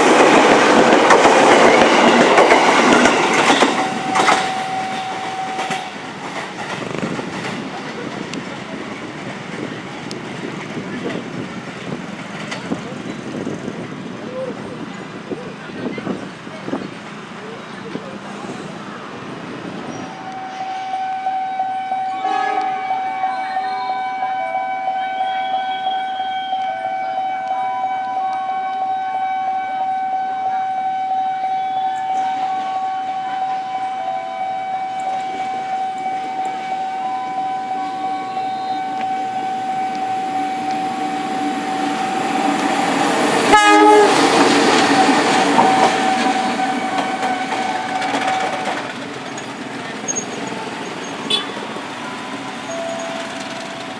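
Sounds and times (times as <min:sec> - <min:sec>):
railroad crossing alarm: 0:00.0 - 0:13.9, 0:19.0 - 0:53.9
train rushing and clattering past: 0:00.0 - 0:20.5, 0:38.9 - 0:53.9.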